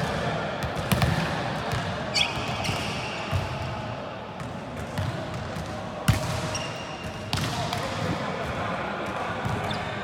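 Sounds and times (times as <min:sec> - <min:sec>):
volleyball hit and bouncing: 0:00.0 - 0:03.5
murmur of voices: 0:07.1 - 0:10.0.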